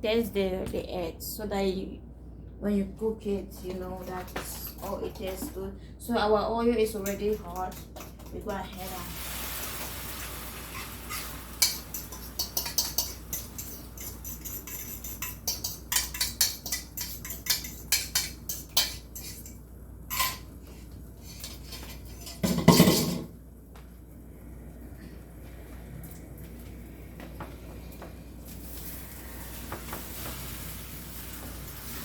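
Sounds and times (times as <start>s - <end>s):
metal utensil clinking on dish: 10.8s - 20.4s
utensil clatter: 21.3s - 23.3s.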